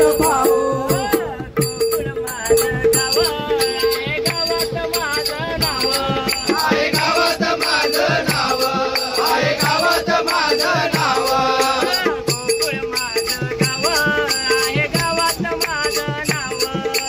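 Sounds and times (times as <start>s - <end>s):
jingling percussion: 0.0s - 17.0s
quick drum beat: 0.0s - 17.0s.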